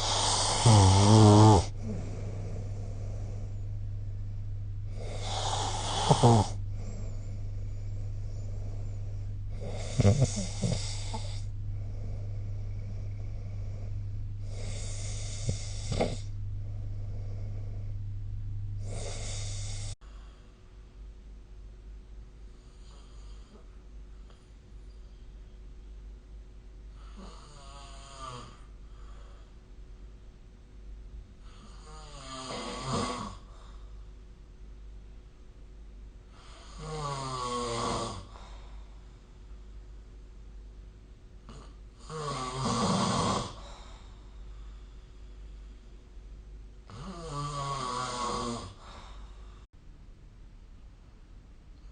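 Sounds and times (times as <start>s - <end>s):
person snoring: 0.0s - 18.2s, 18.8s - 20.0s, 31.5s - 33.5s, 36.4s - 38.6s, 41.5s - 43.9s, 46.9s - 49.3s
steady low hum: 0.0s - 51.9s.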